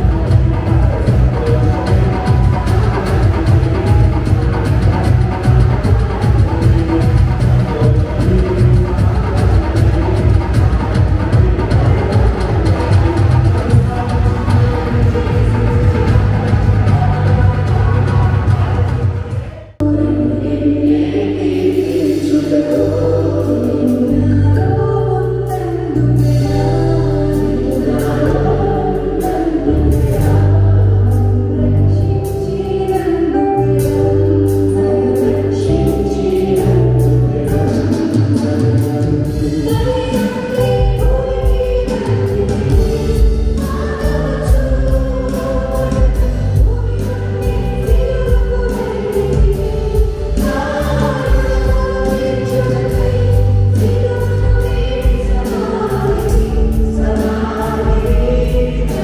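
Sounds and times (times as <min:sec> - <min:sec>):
steady drum beat: 0:00.0 - 0:19.8, 0:36.6 - 0:59.0
group singing: 0:00.0 - 0:24.8, 0:25.9 - 0:32.0, 0:34.7 - 0:59.0
band with heavy bass: 0:00.0 - 0:59.0.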